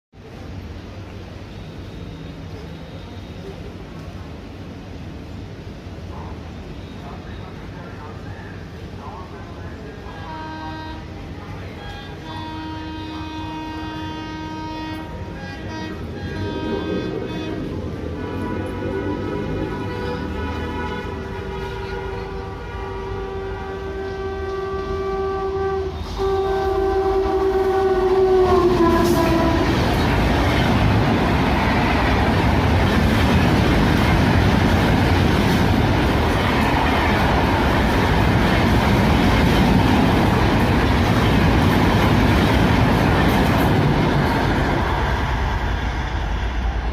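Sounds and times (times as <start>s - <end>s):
locomotive horn blast: 10.1s - 30.2s
train wheels rumbling and clattering: 11.2s - 25.1s, 25.9s - 46.9s.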